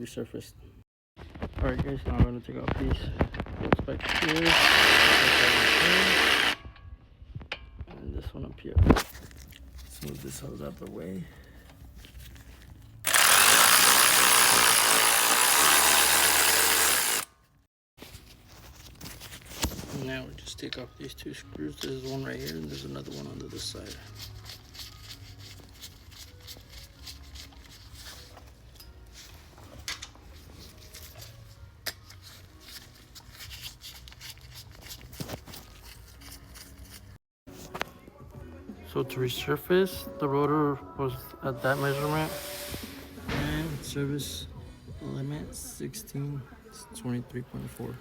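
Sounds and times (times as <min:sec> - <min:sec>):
power tool loosening bolt: 0:04.0 - 0:06.6, 0:13.1 - 0:17.3.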